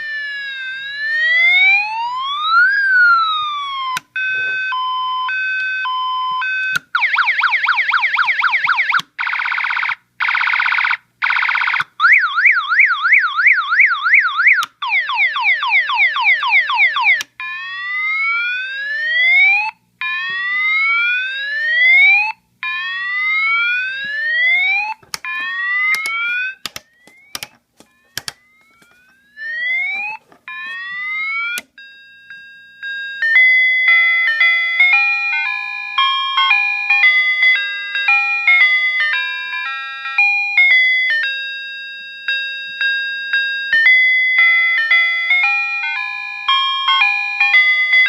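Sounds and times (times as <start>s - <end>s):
electronic horn siren whoops: 0.0s - 9.0s
electronic beeping tune: 4.2s - 6.8s
switch clicks: 25.9s - 27.6s, 28.2s - 28.4s.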